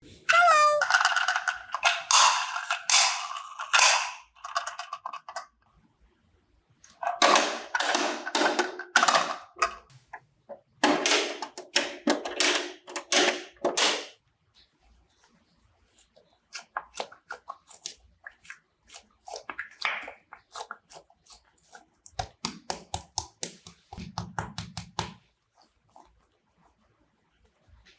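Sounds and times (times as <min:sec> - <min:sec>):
slime squelching: 0:15.1 - 0:26.8.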